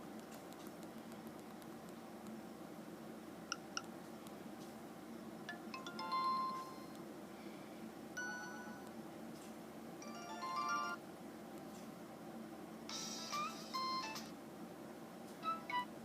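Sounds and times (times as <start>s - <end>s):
electronic ringtone melody: 5.5s - 6.9s, 10.0s - 11.0s, 15.4s - 15.9s.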